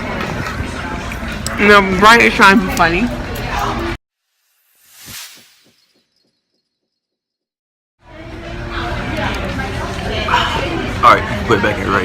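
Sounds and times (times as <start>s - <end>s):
whoosh sound effect: 4.2s - 6.8s.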